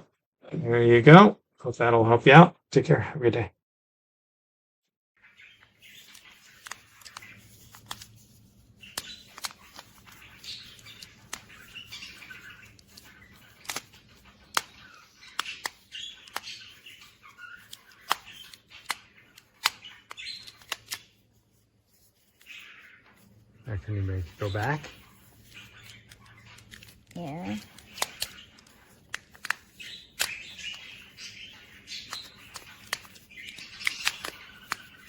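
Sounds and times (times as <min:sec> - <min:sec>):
magnetic pieces snapping together: 0:12.8 - 0:16.6, 0:17.6 - 0:21.1, 0:25.9 - 0:31.0, 0:32.0 - 0:35.0.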